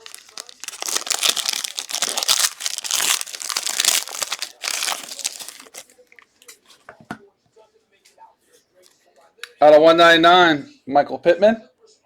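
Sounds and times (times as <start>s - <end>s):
wrapper crinkling and tearing: 0.0s - 5.9s.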